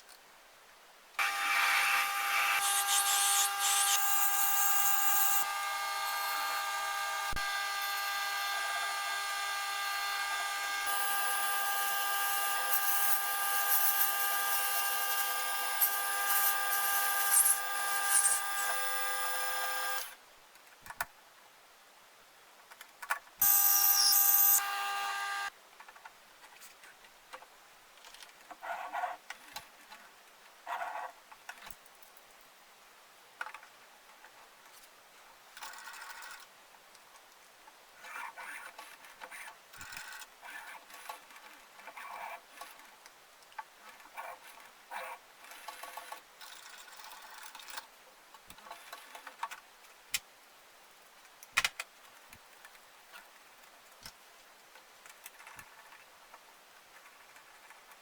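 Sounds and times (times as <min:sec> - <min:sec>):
electric power tool running: 0:01.2 - 0:20.1, 0:23.4 - 0:25.5.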